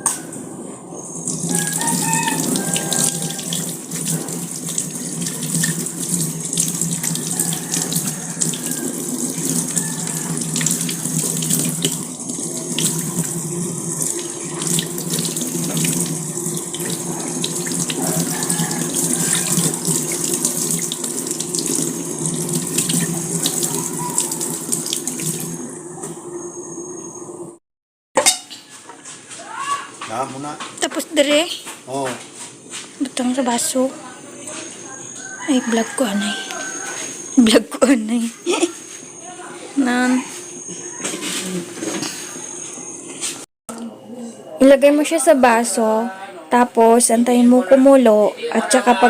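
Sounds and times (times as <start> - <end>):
tap water running into sink: 1.2 - 26.2.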